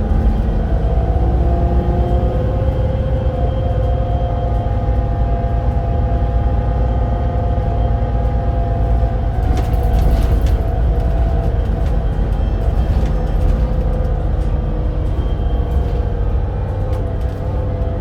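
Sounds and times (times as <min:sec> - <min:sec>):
bus engine rumble: 0:00.0 - 0:18.0
rattling: 0:09.0 - 0:17.6.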